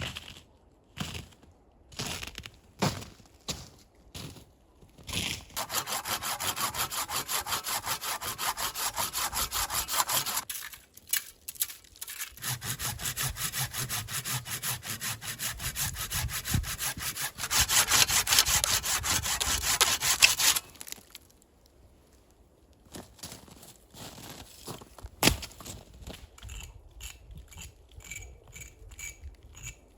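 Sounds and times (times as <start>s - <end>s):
hand saw cutting wood: 5.6s - 10.5s, 12.1s - 20.7s.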